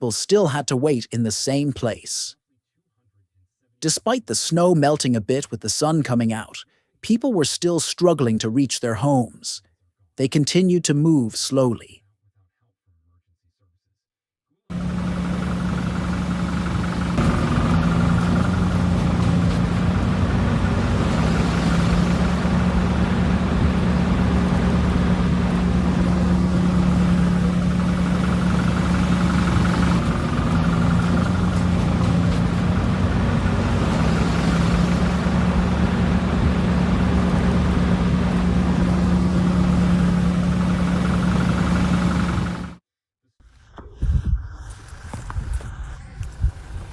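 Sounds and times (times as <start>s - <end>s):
vehicle engine humming: 14.7s - 42.8s
road and wind noise: 15.2s - 42.6s, 44.0s - 46.9s.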